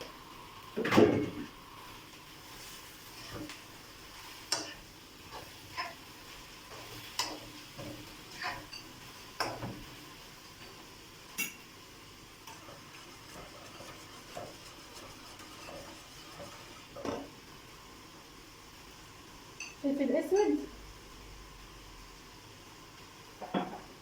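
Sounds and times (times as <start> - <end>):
spoon scraping and knocking a pan: 3.2 - 3.6, 6.7 - 9.9, 12.4 - 17.3.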